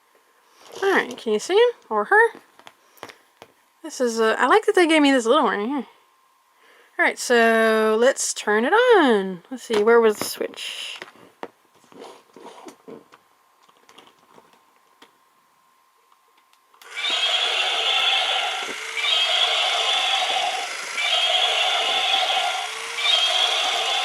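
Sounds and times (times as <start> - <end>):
toy sound effects and motor: 16.8 - 24.0.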